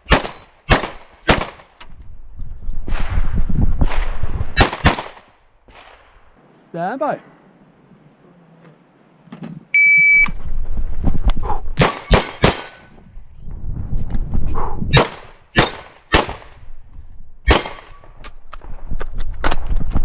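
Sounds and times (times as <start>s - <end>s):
shotgun shots: 0.0s - 1.8s, 4.6s - 6.0s, 11.8s - 12.9s, 14.9s - 16.6s, 17.5s - 18.4s.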